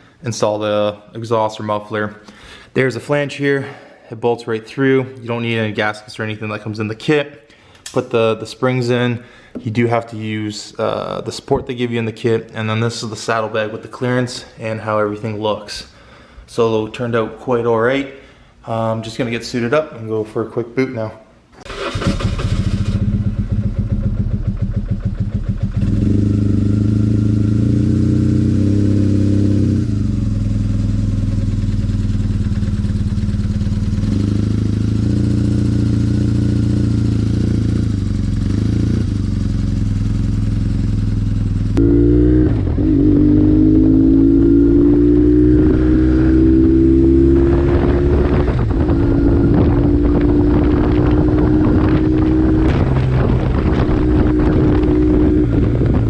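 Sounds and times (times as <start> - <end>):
motorcycle accelerating: 21.7 - 56.0
motorcycle engine idling and revving: 21.8 - 56.0.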